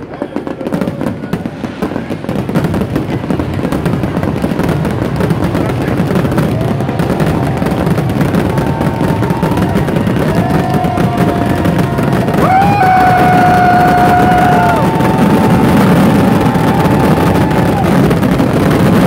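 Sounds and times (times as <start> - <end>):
fireworks bangs and crackles: 0.0 - 19.0
faint firework whistles: 0.1 - 2.8.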